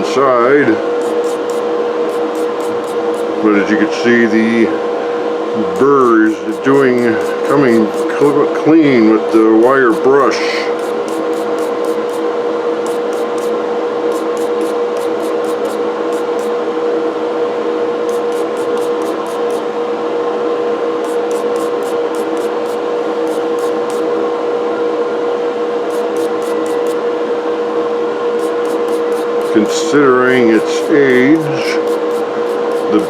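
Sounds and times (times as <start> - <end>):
steady hum with clear tone: 0.0 - 4.7, 5.4 - 17.1, 17.8 - 20.2, 20.8 - 24.6, 25.8 - 27.4, 28.3 - 33.0
wire brush scrubbing metal: 0.9 - 3.4, 5.8 - 8.4, 9.7 - 16.6, 18.1 - 19.7, 21.0 - 24.1, 25.9 - 27.0, 28.4 - 33.0.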